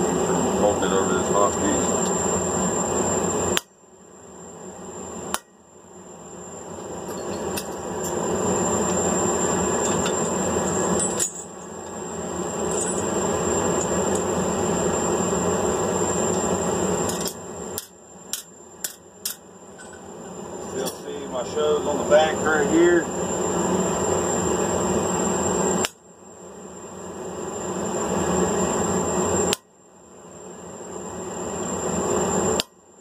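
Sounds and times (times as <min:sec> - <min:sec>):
hammer striking punch on hot steel: 0:03.5 - 0:03.8, 0:05.3 - 0:05.6, 0:25.8 - 0:26.0, 0:29.5 - 0:29.7, 0:32.6 - 0:32.8.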